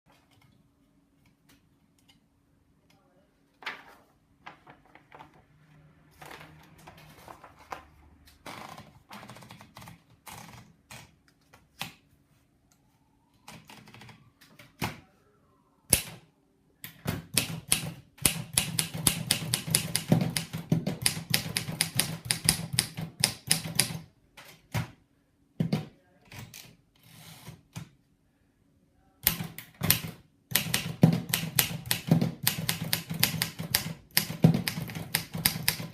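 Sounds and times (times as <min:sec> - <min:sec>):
manual typewriter keystrokes: 0:13.4 - 0:14.9, 0:17.2 - 0:24.8, 0:29.2 - 0:35.9.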